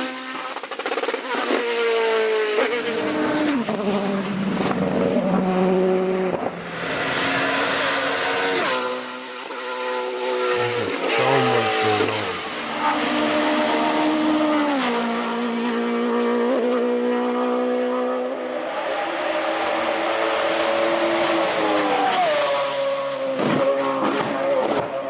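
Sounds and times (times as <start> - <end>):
race car engine running hard: 0.1 - 25.0.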